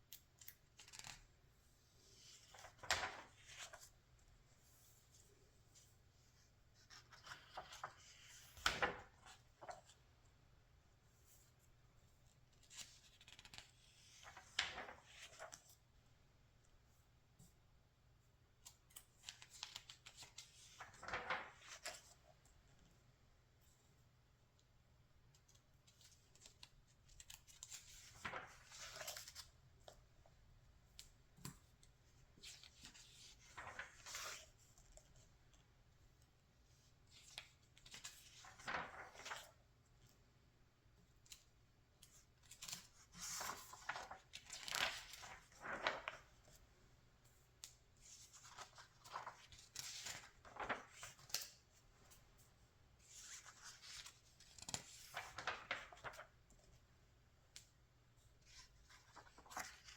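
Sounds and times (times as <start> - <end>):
magazine pages turning: 0.4 - 1.2, 2.2 - 3.9, 6.8 - 10.0, 19.2 - 22.2, 26.0 - 29.6, 32.4 - 35.1, 37.2 - 39.6, 42.0 - 46.6, 48.0 - 52.2, 53.0 - 56.7, 58.4 - 59.9
paper handling: 2.2 - 3.9, 18.6 - 22.2, 25.9 - 30.0, 32.4 - 35.2, 37.2 - 39.6, 41.3 - 46.6, 47.6 - 52.2, 53.0 - 56.8, 58.4 - 59.9.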